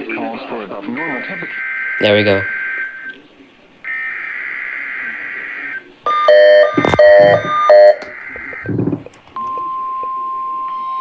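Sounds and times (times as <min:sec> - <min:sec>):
steady alert tone: 0:06.1 - 0:08.1
choppy beeping bursts: 0:06.1 - 0:10.0.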